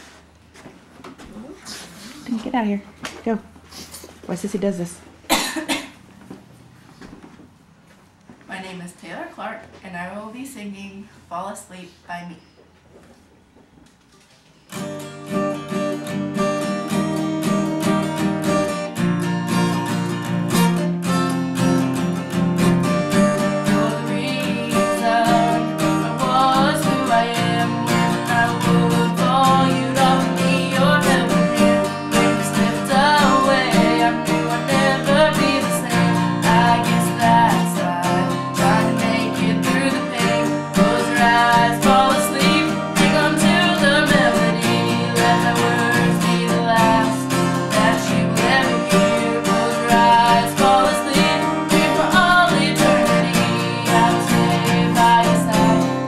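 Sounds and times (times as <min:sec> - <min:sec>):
acoustic guitar strumming: 0:14.7 - 0:56.0
person singing: 0:23.6 - 0:56.0.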